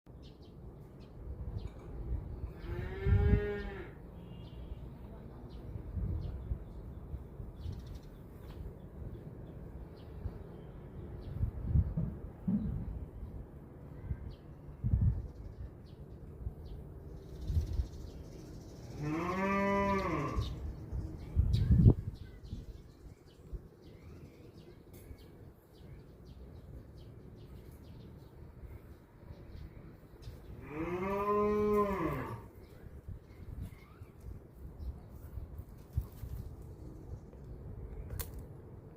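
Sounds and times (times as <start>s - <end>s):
cow mooing: 2.6s - 4.0s, 19.0s - 20.5s, 30.6s - 32.5s
faint bird chirps: 32.6s - 35.4s.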